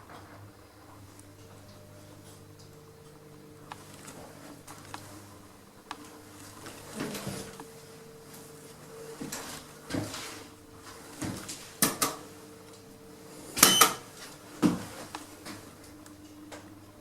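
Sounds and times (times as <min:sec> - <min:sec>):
steady building hum: 0:00.0 - 0:17.0
footsteps: 0:03.5 - 0:12.9, 0:14.1 - 0:16.0.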